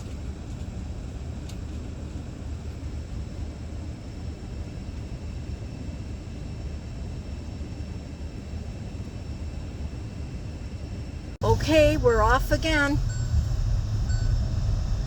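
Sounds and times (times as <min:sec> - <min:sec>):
vehicle running from inside cab: 0:11.4 - 0:15.0.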